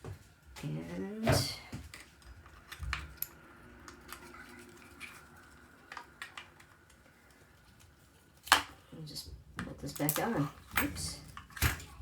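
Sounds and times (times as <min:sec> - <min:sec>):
small parts and tools clicking: 0:01.9 - 0:08.8.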